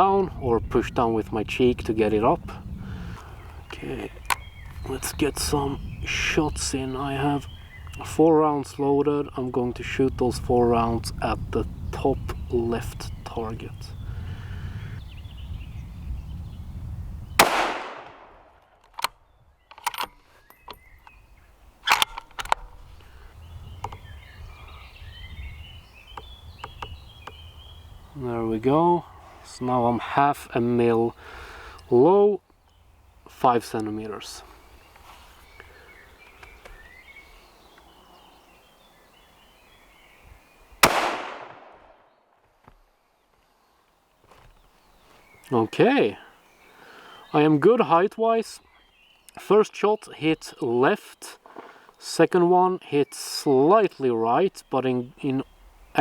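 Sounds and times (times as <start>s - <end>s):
birds chirping: 0.0s - 56.0s
rifle shot: 17.4s - 18.6s, 40.8s - 42.0s
rifle bolt clicks: 17.4s - 20.2s, 21.8s - 22.7s.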